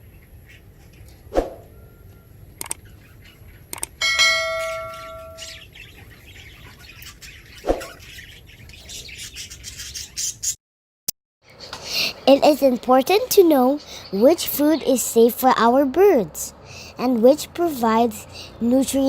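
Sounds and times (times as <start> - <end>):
budgies chirping: 2.0 - 10.6, 11.5 - 15.7
small bell ringing: 4.0 - 5.6.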